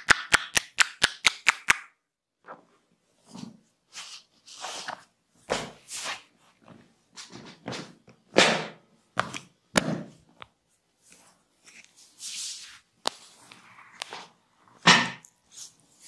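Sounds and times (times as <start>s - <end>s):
hands rubbing and slapping skin: 0.0s - 2.0s.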